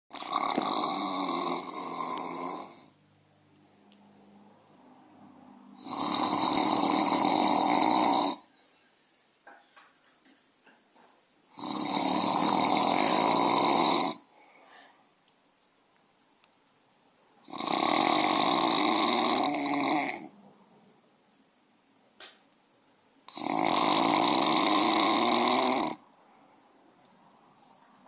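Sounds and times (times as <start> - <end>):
loud snoring: 0.1 - 3.0, 5.8 - 8.5, 11.5 - 14.3, 17.4 - 20.3, 23.3 - 26.0
quiet breathing: 8.4 - 9.2, 14.2 - 15.3, 26.0 - 28.0.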